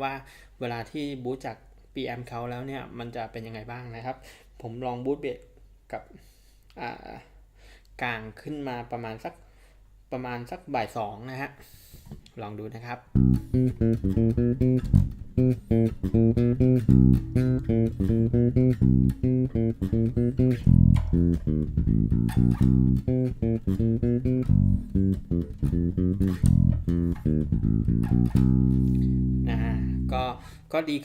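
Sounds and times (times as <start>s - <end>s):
electric bass guitar plucked notes: 13.1s - 30.6s.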